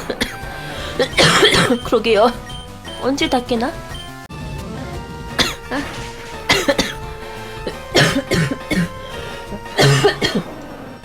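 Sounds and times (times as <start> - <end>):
woman coughing: 0.0 - 2.4, 5.4 - 7.0, 7.7 - 9.0, 9.6 - 10.5.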